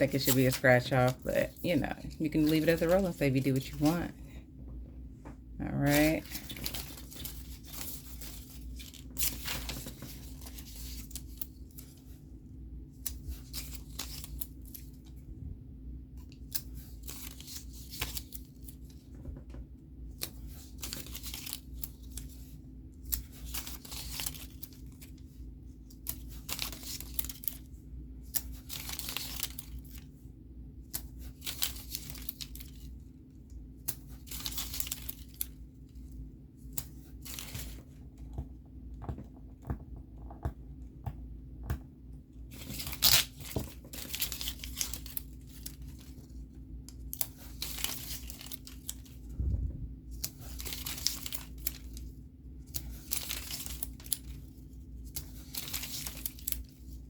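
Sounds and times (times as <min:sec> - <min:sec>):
faint steady hum: 0:00.0 - 0:57.0
stickers ripping and rustling: 0:05.8 - 0:12.1, 0:20.1 - 0:30.2, 0:30.8 - 0:33.1, 0:33.8 - 0:37.8, 0:42.4 - 0:49.3, 0:50.0 - 0:57.0.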